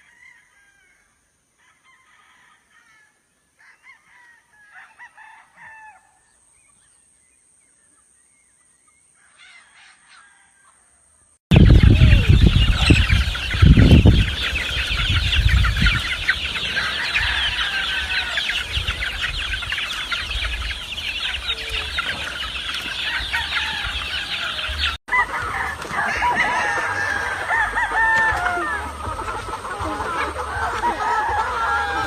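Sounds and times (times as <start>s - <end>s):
flock of chickens clucking: 11.5s - 32.0s
loud chicken calls: 11.5s - 32.0s.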